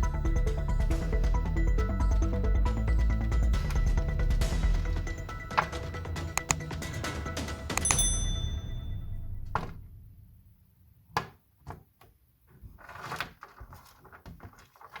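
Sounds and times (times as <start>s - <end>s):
background music: 0.0s - 9.9s.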